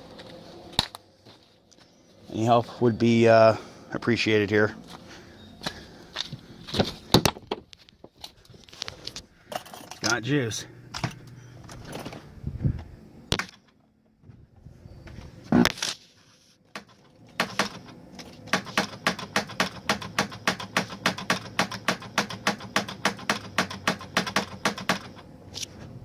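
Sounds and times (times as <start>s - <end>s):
engine starter cranking and clicking: 16.7s - 25.3s.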